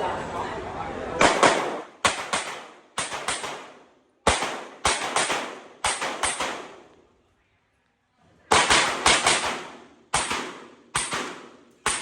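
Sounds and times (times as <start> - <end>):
handgun shots: 1.2 - 6.8, 8.6 - 12.0.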